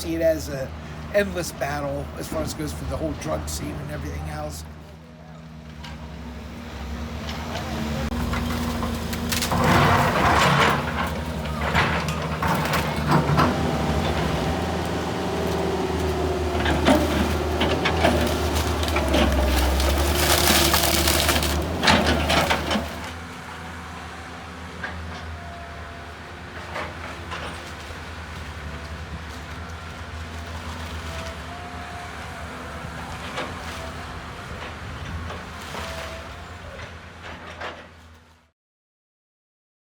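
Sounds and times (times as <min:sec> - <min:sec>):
heavy machine engine humming: 0:00.0 - 0:38.4
timber cracking and crashing: 0:08.1 - 0:13.6, 0:15.4 - 0:23.2.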